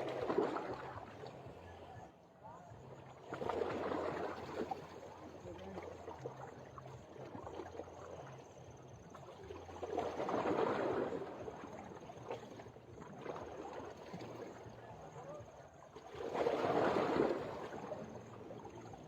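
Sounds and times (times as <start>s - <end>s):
water splashing around boat: 0.0s - 19.0s.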